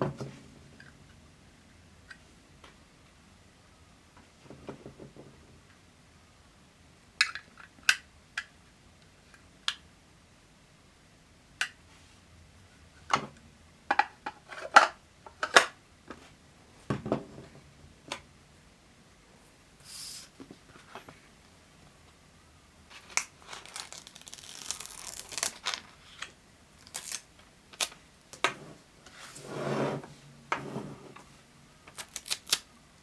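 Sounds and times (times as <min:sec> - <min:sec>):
plastic pieces clicking: 0:31.9 - 0:32.7.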